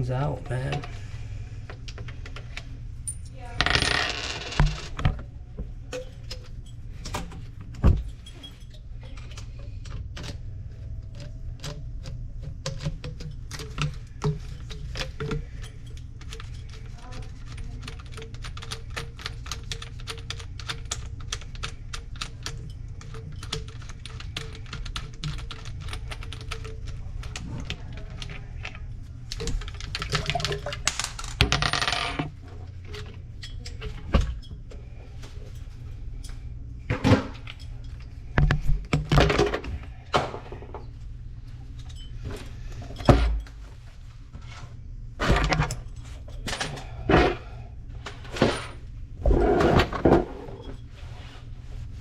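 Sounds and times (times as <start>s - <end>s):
steady low hum: 0.0s - 52.0s
tools and drain parts clinking: 5.8s - 10.4s, 11.1s - 34.6s, 41.7s - 43.6s.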